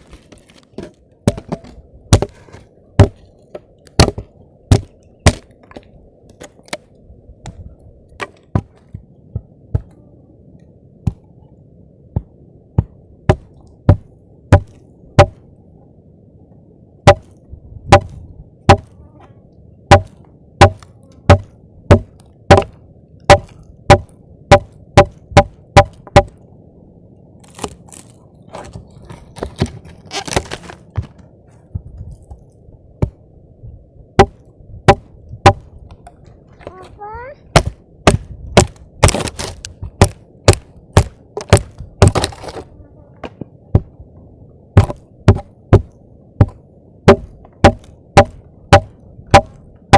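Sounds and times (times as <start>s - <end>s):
rustling and crackling: 0.0s - 10.0s, 27.4s - 33.2s, 38.6s - 44.0s
wood chopping strikes: 0.8s - 2.4s, 3.0s - 3.2s, 4.0s - 5.5s, 12.2s - 15.4s, 17.1s - 17.3s, 17.9s - 18.9s, 19.9s - 26.4s, 34.2s - 35.7s, 37.5s - 42.6s, 44.8s - 49.6s.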